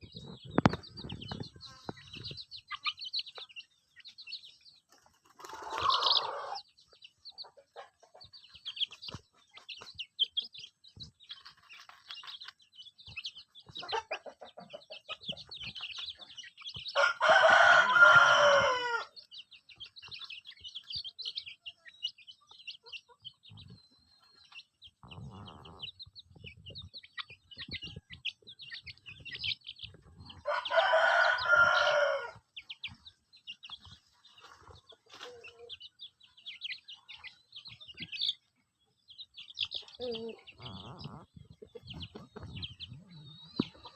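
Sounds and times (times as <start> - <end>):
chicks cheeping: 0.0 - 43.9
rooster crowing: 17.0 - 19.1, 30.4 - 32.4.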